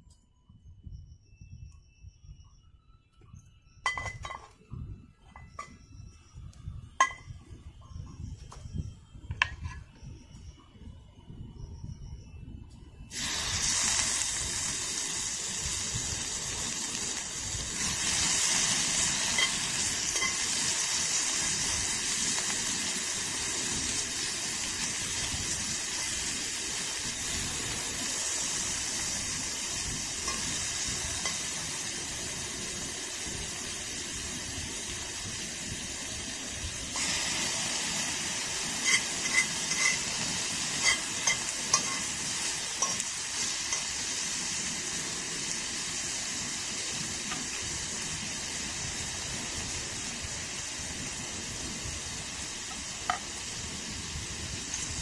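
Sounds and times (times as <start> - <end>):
food sizzling in a pan: 13.1 - 55.0.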